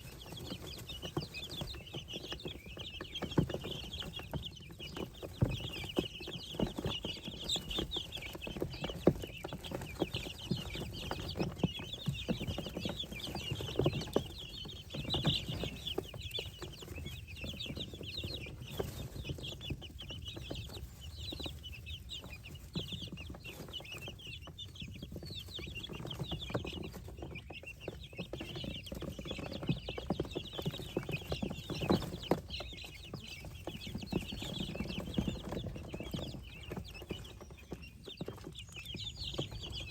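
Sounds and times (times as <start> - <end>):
baby poultry peeping: 0.0 - 39.9.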